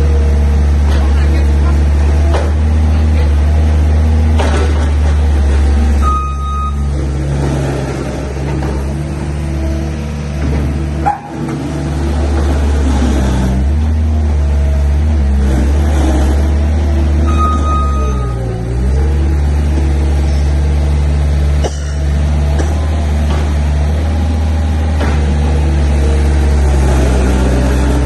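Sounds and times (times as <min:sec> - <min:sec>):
loader engine under load: 0:00.0 - 0:28.0
short high beep: 0:06.0 - 0:06.9, 0:17.3 - 0:18.5.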